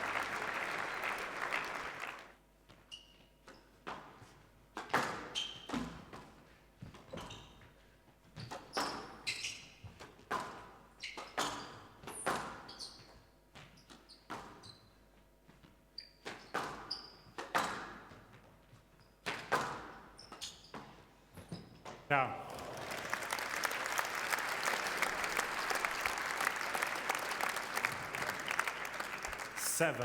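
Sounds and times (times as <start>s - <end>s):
court shoes squeaking: 2.7s - 3.9s, 5.2s - 6.1s, 6.8s - 22.8s
squash ball hitting rackets and walls: 10.0s - 12.7s, 16.2s - 18.2s, 19.2s - 20.1s.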